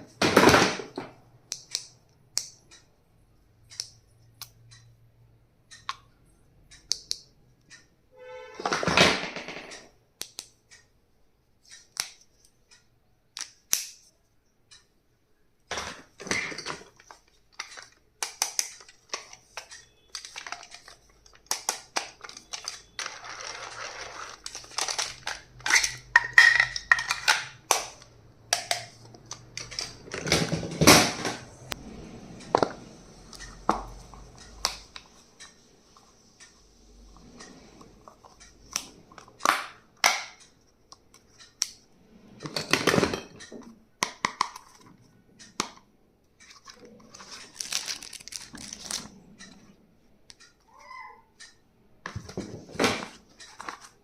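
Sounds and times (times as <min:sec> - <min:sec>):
packaging rustling and crinkling: 0:47.1 - 0:49.2.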